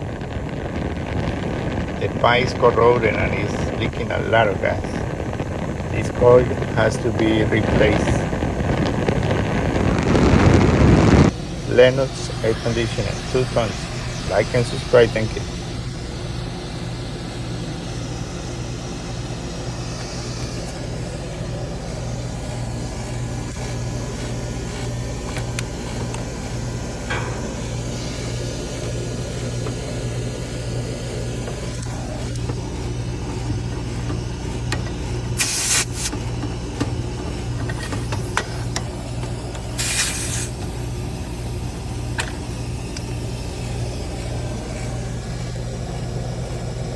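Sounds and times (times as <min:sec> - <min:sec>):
air conditioner unit humming: 0:00.0 - 0:46.9
short bursts of hiss: 0:35.4 - 0:36.2, 0:39.8 - 0:40.6.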